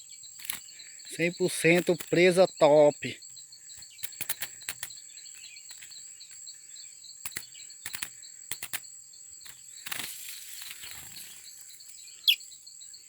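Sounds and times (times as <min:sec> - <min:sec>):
insect chorus buzzing: 0:00.0 - 0:13.0
pulsing insect chirp: 0:00.0 - 0:13.0
sharp clicks: 0:00.4 - 0:02.4, 0:03.7 - 0:06.0, 0:07.2 - 0:08.8.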